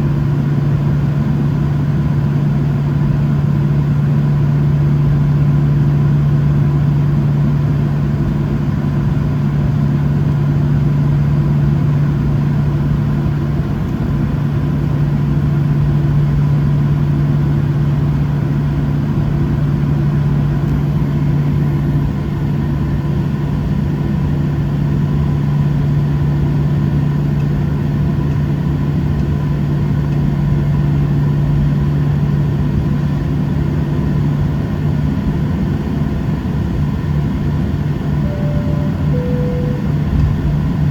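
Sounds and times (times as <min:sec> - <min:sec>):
airplane cabin engine hum: 0:00.0 - 0:40.9
cabin air noise: 0:38.2 - 0:40.9.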